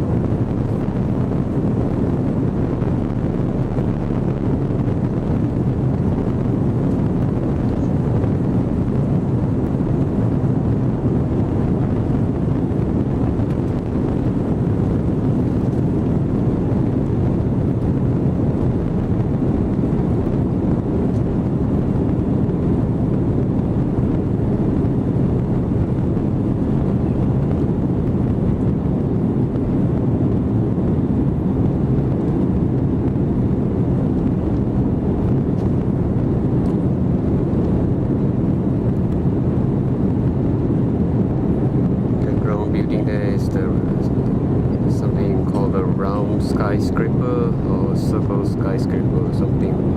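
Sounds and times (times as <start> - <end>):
jet engines rumbling in cabin: 0.0 - 49.9.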